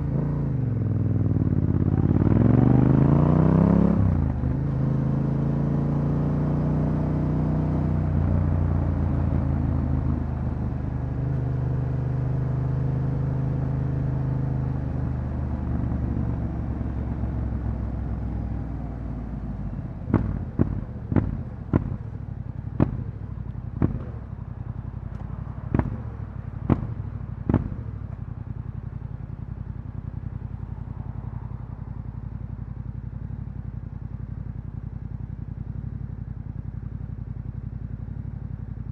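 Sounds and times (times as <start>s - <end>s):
motorcycle engine running: 0.0s - 38.9s
exhaust pops: 20.1s - 22.1s, 22.7s - 24.2s, 26.6s - 28.2s.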